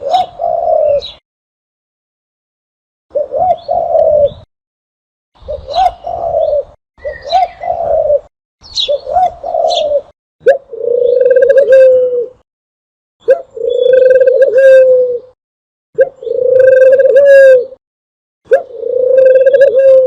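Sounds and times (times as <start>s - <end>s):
dove cooing: 0.0s - 1.2s, 3.1s - 4.5s, 5.4s - 12.4s, 13.2s - 15.4s, 16.0s - 17.8s, 18.5s - 20.0s
small birds chirping: 0.0s - 1.2s, 5.4s - 10.1s, 13.4s - 14.4s, 16.2s - 16.6s.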